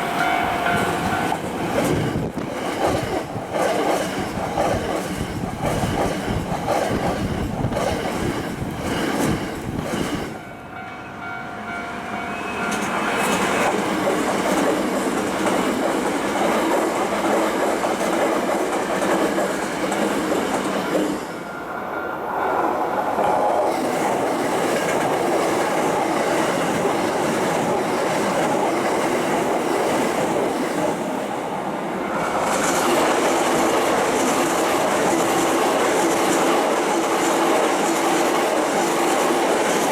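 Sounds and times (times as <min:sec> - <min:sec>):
electric trains passing: 0:00.0 - 0:39.9
wheels clacking over rail joints: 0:12.7 - 0:21.3.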